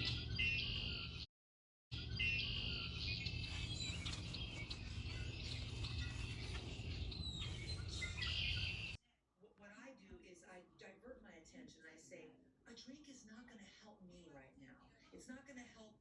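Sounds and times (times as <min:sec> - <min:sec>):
small birds chirping: 0:00.0 - 0:01.3, 0:01.9 - 0:09.0
low background rumble: 0:02.5 - 0:09.0.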